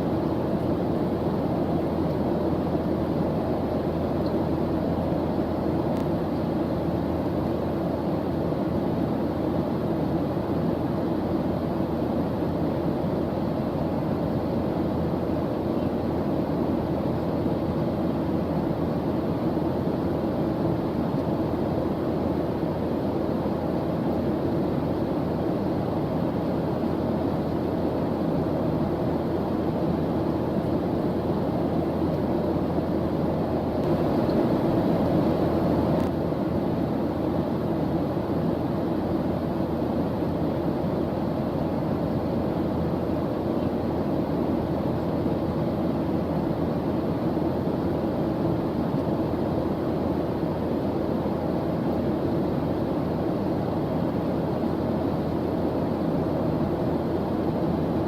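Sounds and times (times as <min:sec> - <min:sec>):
low rushing white noise: 0:00.0 - 0:58.0.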